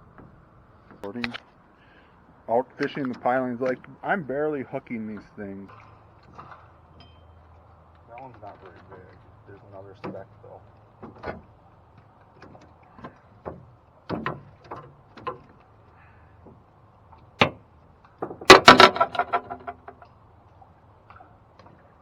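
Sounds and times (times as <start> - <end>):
rattling clatter of clicks: 18.2 - 20.1
short knocks and clicks: 18.2 - 20.1.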